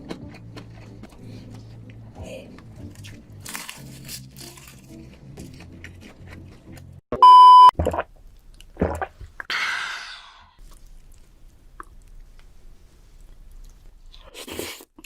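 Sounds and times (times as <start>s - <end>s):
crunchy chewing: 0.0s - 7.0s
loud electronic beep: 7.2s - 7.7s.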